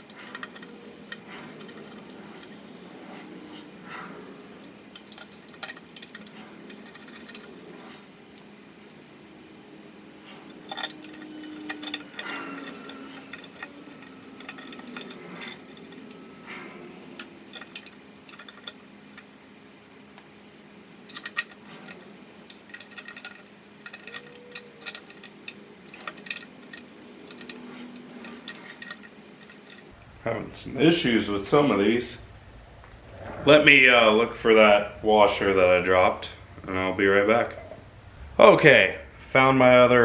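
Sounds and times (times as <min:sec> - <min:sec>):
metal bolts clicking and clinking: 0:00.0 - 0:29.9.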